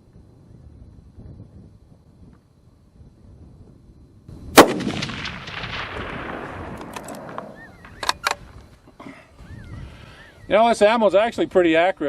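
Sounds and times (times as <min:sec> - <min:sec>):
rifle shot with echo: 0:04.5 - 0:08.4
sharp clicks: 0:06.7 - 0:08.7.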